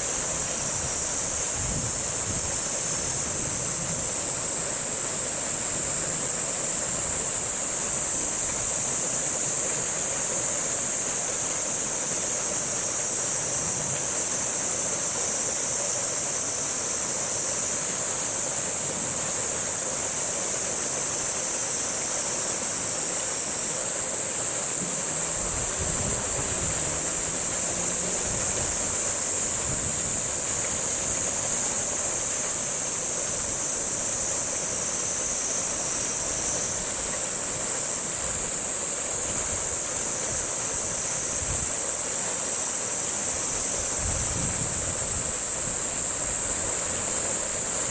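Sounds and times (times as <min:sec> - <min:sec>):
cicadas shrilling: 0:00.0 - 0:47.9.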